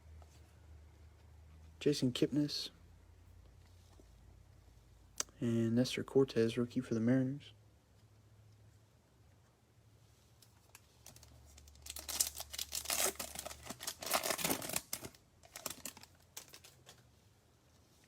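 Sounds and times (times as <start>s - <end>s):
card packaging crinkling and tearing: 10.7s - 17.0s.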